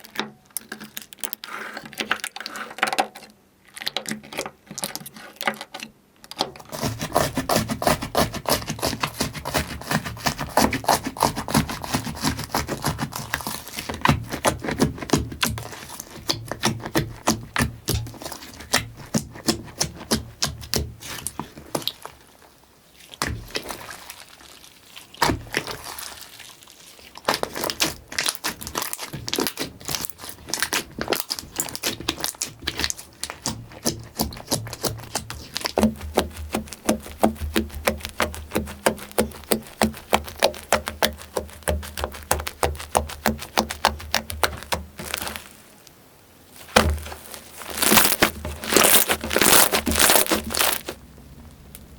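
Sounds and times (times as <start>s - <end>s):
slime clicking and popping: 27.3s - 45.5s, 46.7s - 51.0s.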